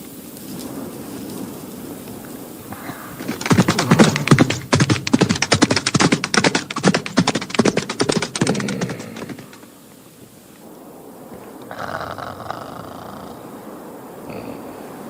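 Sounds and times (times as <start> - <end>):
rapid sharp taps: 2.8 - 9.7.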